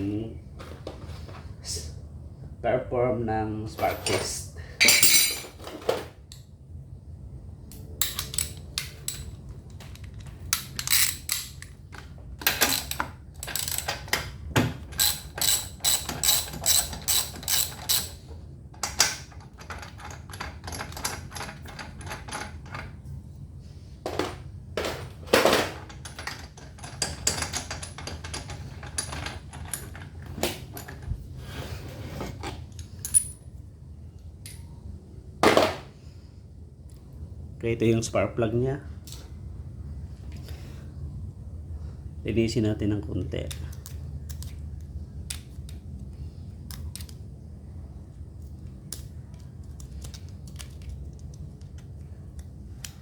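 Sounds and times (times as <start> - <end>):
metal tool clinks: 4.8 - 5.4
ratchet wrench clicking: 15.0 - 18.2.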